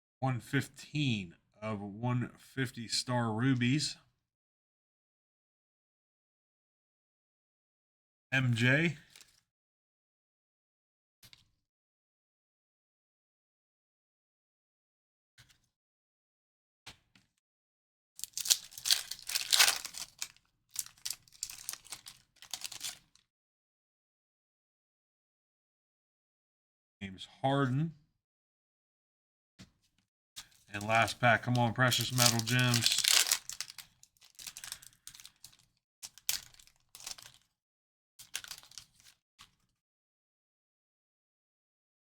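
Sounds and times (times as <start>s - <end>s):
wrapper tearing and crinkling: 18.2s - 23.0s, 30.8s - 37.5s, 38.2s - 39.2s.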